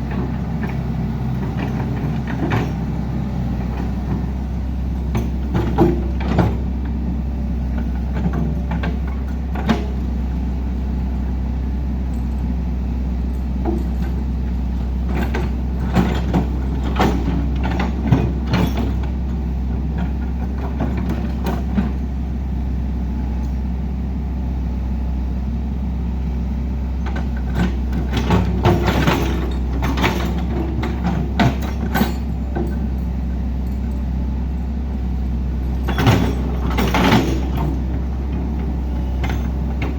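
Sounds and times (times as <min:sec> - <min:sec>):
heavy diesel engine running: 0:00.0 - 0:39.9
knocks and clanks: 0:00.1 - 0:04.4, 0:05.0 - 0:07.0, 0:15.1 - 0:19.2, 0:27.0 - 0:34.0, 0:35.7 - 0:39.9.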